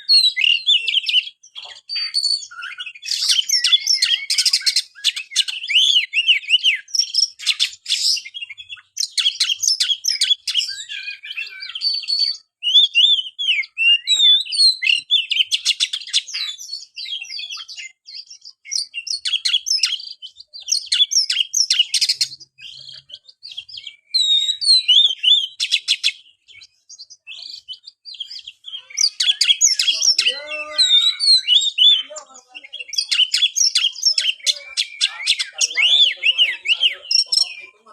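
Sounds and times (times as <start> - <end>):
bird singing whistled song: 0.0 - 37.8.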